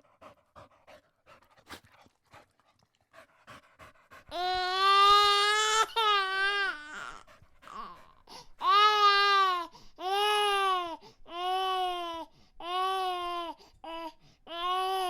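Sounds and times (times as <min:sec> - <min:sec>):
infant gasping breaths: 0:03.2 - 0:15.0
infant crying: 0:04.3 - 0:15.0.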